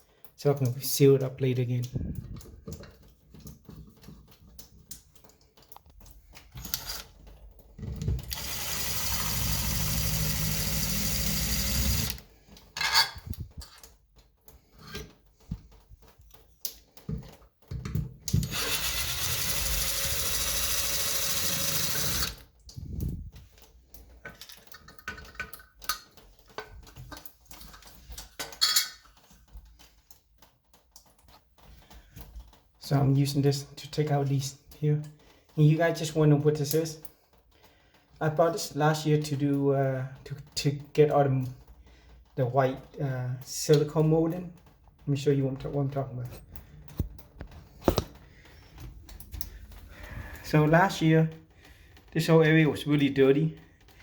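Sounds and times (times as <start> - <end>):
knocks and handling clatter: 1.9 - 8.4, 12.3 - 18.5, 22.8 - 32.8
power drill running: 8.3 - 12.2, 18.4 - 22.4.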